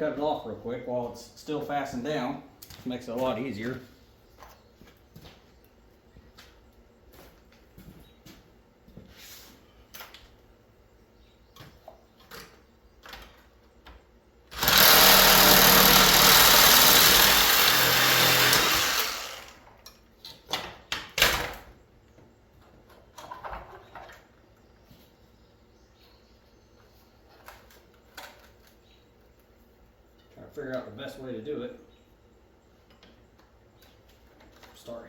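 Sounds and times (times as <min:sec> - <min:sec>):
reciprocating saw cutting metal tubing: 0:14.5 - 0:19.6.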